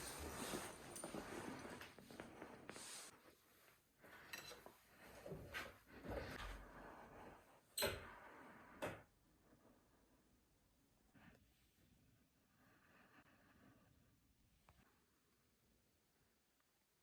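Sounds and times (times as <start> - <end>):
dishes and cutlery clinking: 4.1 - 4.8.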